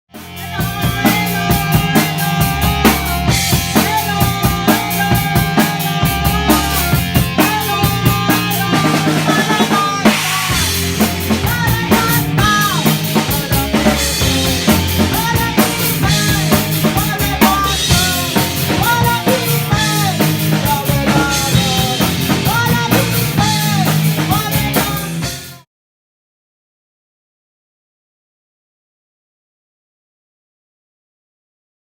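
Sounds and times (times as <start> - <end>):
band playing: 0.1 - 25.6
drum kit beat: 0.1 - 25.6.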